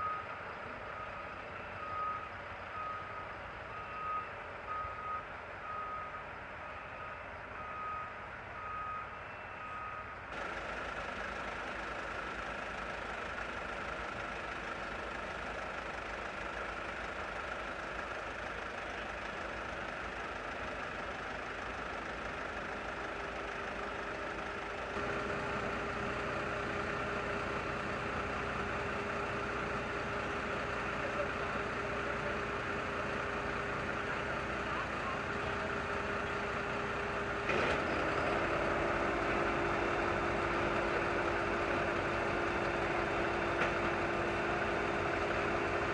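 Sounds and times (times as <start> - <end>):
vehicle reversing beeper: 0.0 - 11.4
truck engine running: 10.3 - 45.9.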